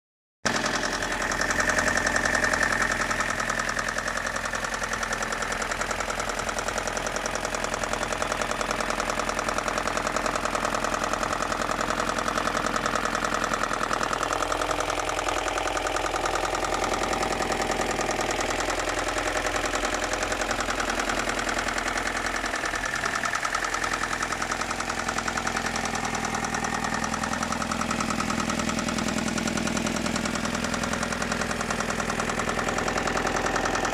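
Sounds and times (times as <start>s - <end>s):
car engine idling: 0.5s - 33.9s
rapid regular engine knocking: 0.5s - 33.9s.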